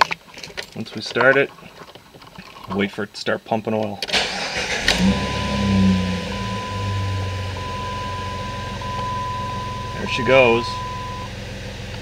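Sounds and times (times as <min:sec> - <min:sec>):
car engine starting and idling: 0:04.0 - 0:12.0
dashboard chime beeping: 0:05.0 - 0:11.3.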